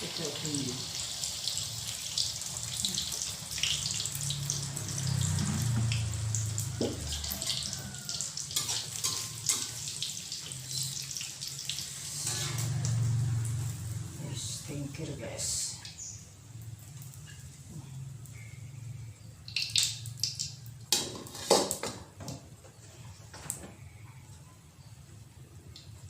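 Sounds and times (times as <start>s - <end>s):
egg sizzling in oil: 0.0s - 14.0s.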